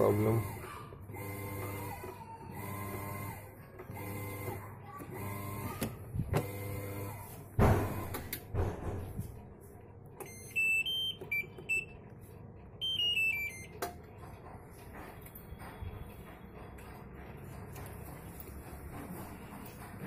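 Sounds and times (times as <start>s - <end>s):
washing machine motor humming: 0.0s - 20.0s
loud knock: 7.6s - 9.2s
electronic beeps: 10.2s - 12.0s, 12.8s - 13.7s.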